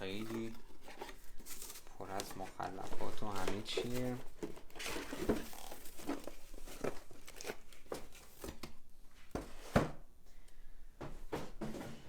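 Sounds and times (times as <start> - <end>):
plastic packaging rustling: 0.0 - 8.9.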